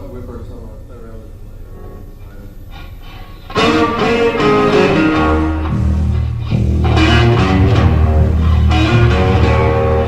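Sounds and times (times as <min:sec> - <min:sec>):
electric guitar lines: 0:00.0 - 0:10.0
blues-rock band playing: 0:02.8 - 0:10.0
heavy bass: 0:03.5 - 0:10.0.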